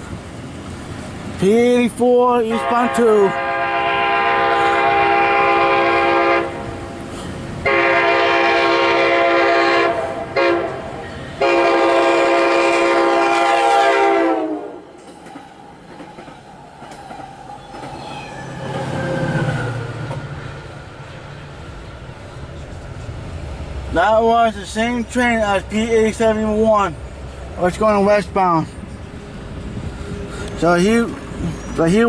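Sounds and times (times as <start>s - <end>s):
train horn chord: 2.5s - 7.0s, 7.6s - 14.9s
train wheels rumbling and clattering: 10.2s - 32.0s.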